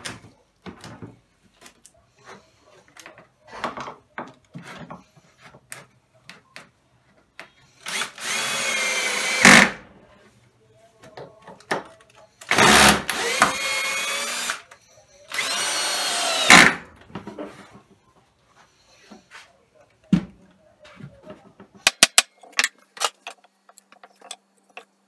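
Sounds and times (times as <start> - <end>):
power drill running: 7.8 - 9.7, 12.5 - 14.6, 15.3 - 16.8.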